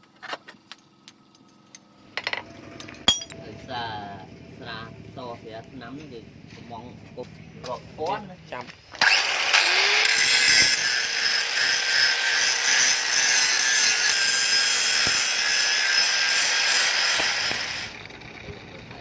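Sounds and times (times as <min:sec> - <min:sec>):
power tool grinding: 0:08.8 - 0:18.6.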